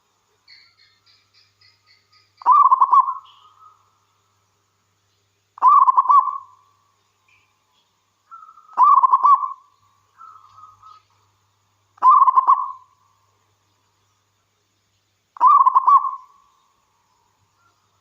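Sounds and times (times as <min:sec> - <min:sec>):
dove cooing trilled phrases: 0:02.0 - 0:03.7, 0:05.6 - 0:06.6, 0:08.3 - 0:11.0, 0:12.0 - 0:13.0, 0:15.4 - 0:16.4.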